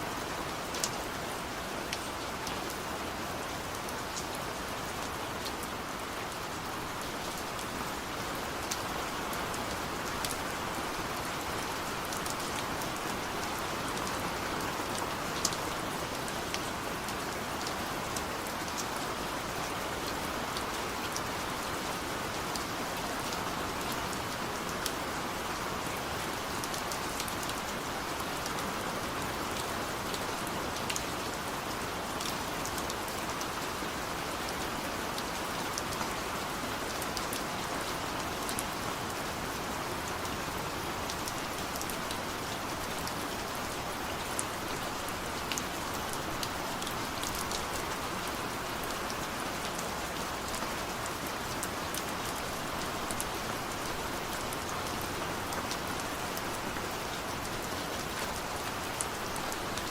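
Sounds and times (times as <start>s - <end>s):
steady rain hiss: 0.0s - 59.9s.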